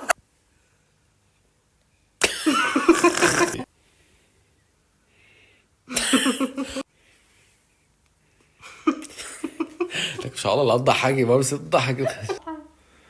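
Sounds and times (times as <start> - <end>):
woman laughing: 2.2 - 3.7, 5.9 - 6.8, 8.6 - 10.2, 12.0 - 12.7.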